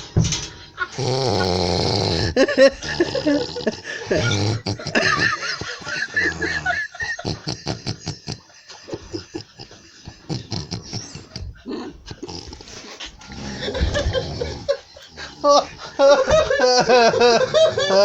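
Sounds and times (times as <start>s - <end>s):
person snoring: 0.8s - 8.3s, 10.3s - 18.0s.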